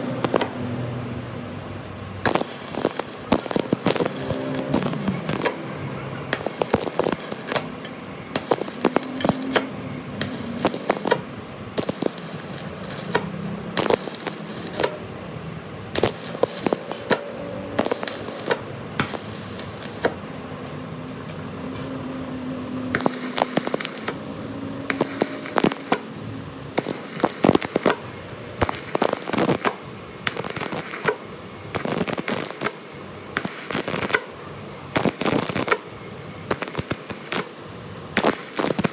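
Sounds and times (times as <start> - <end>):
crackle: 0.0 - 0.5, 2.3 - 5.7, 6.3 - 7.7, 8.4 - 15.0, 16.0 - 20.2, 23.0 - 26.1, 26.8 - 28.0, 28.6 - 34.3, 35.0 - 38.9.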